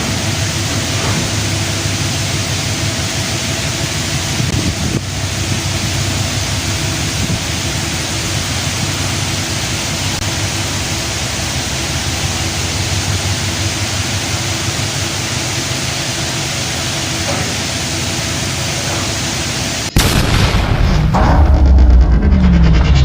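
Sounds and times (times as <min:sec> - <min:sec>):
engine hum: 0:00.0 - 0:23.0
road and wind noise: 0:03.8 - 0:10.6.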